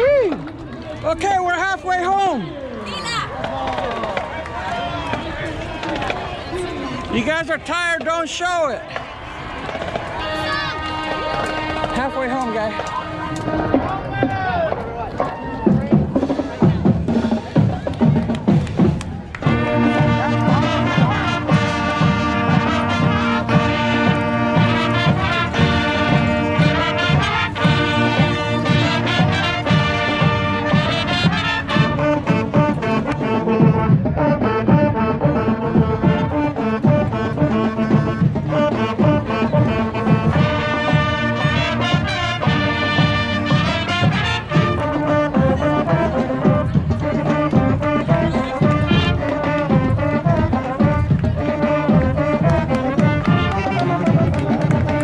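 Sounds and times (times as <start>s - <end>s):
drum line beat: 7.1s - 12.7s, 13.5s - 55.0s
brass section melody: 10.0s - 14.6s, 19.4s - 55.0s.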